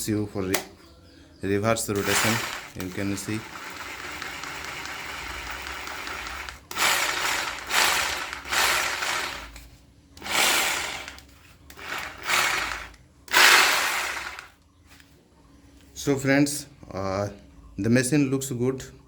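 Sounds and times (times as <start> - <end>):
rotary hammer drill bursts: 1.9 - 9.6, 10.2 - 14.6.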